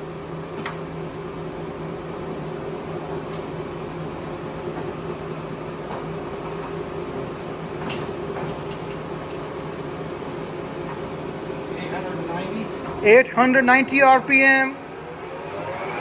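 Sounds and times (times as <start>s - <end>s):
lathe motor and spindle hum: 0.0s - 16.0s.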